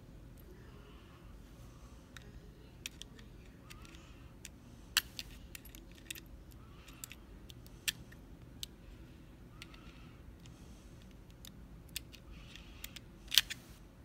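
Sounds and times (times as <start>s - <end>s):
lock parts clicking and clinking: 2.1s - 8.8s, 9.5s - 13.7s.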